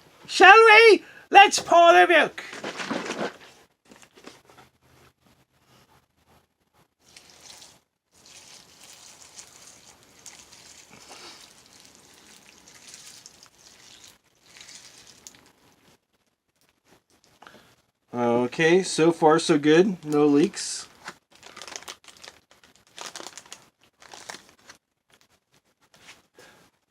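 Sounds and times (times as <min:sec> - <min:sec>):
milk trickling onto cereal: 0:07.0 - 0:17.4.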